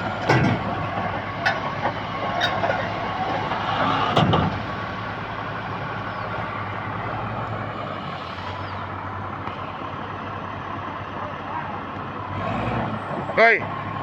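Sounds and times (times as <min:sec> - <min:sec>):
heavy diesel engine running: 0:00.0 - 0:14.0
loud metallic clank and thud: 0:00.2 - 0:03.4, 0:04.1 - 0:04.7.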